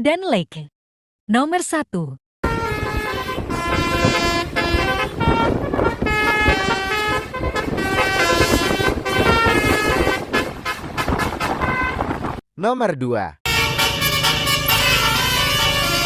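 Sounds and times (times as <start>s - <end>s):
musical bus air horn melody: 2.4s - 12.2s, 13.4s - 16.0s.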